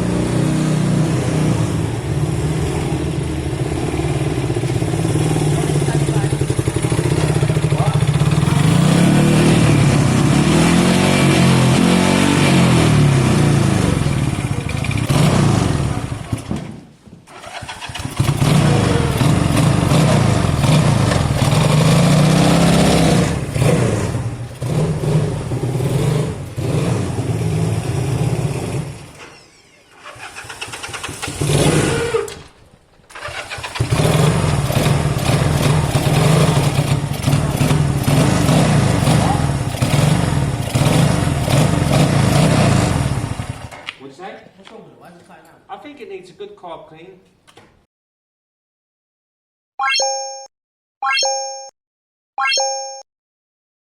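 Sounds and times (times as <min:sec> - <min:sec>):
motorcycle engine revving: 0:00.0 - 0:16.6, 0:17.3 - 0:29.2, 0:29.9 - 0:32.3, 0:33.1 - 0:43.8.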